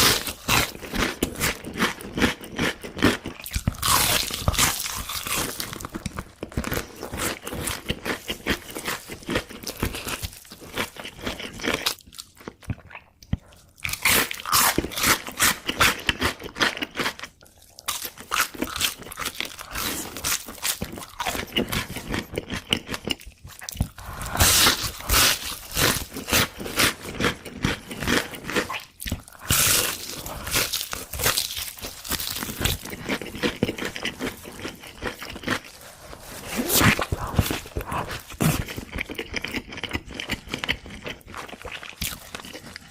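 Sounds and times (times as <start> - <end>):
crunchy bites: 0.0 - 12.3
wet chewing: 0.0 - 42.9.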